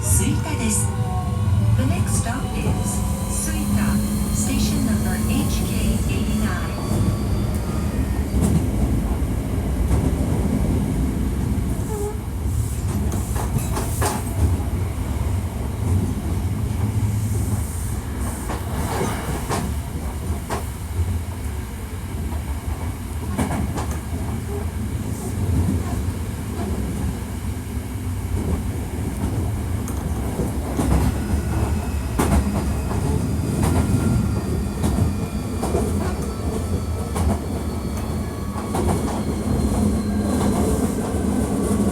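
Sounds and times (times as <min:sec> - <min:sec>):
train wheels rumbling: 0:00.0 - 0:21.4, 0:22.1 - 0:41.9.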